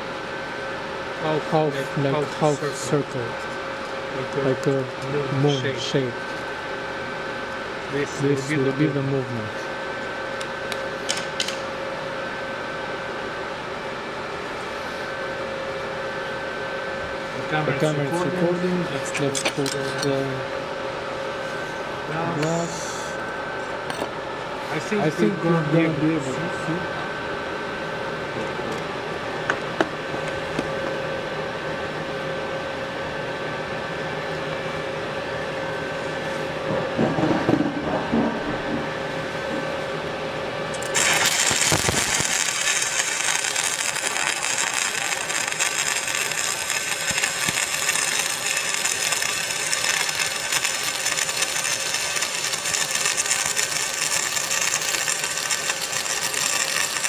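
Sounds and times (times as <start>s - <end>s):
welding machine humming: 0.0s - 31.2s, 33.2s - 57.0s
welding arc crackling and sizzling: 10.4s - 11.7s, 40.7s - 57.0s.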